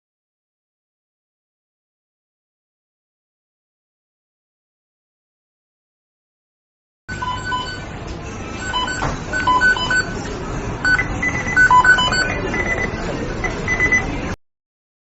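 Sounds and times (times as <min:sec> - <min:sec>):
kitchen timer beeps: 0:07.1 - 0:07.9, 0:08.6 - 0:10.2, 0:10.8 - 0:14.1
noisy kitchen background: 0:07.1 - 0:14.4.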